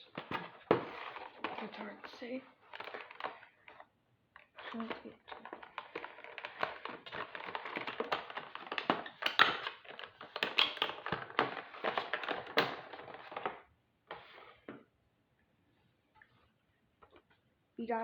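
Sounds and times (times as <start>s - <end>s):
cardboard and plastic packaging rustling: 0.0s - 14.6s.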